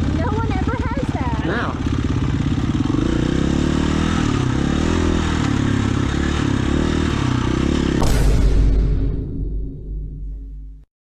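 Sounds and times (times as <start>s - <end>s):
dirt bike engine revving: 0.0s - 8.3s.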